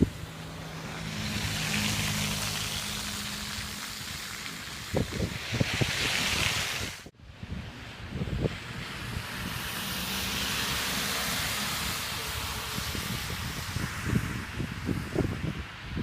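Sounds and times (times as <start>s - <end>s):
storm wind blowing: 0.0s - 16.0s
wind buffeting microphone: 1.2s - 16.0s.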